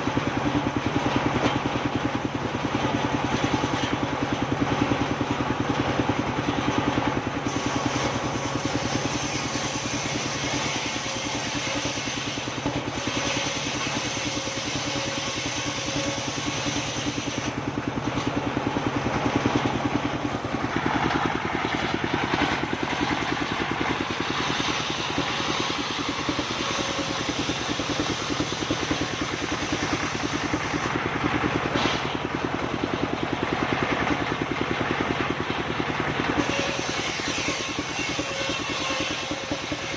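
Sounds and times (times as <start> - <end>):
sawmill engine running: 0.0 - 39.9
saw blade cutting wood: 7.4 - 31.0, 31.6 - 32.2, 36.2 - 39.9.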